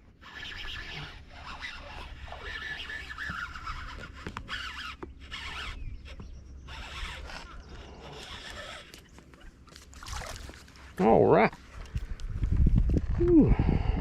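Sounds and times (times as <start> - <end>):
fishing reel whirring: 0.1 - 10.8.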